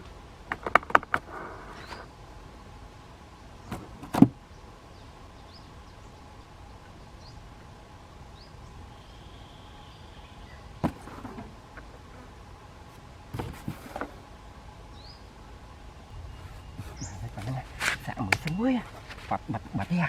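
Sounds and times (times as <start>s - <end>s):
faint steady hum: 0.0s - 20.0s
faint high chirps: 8.3s - 10.9s, 14.8s - 19.8s.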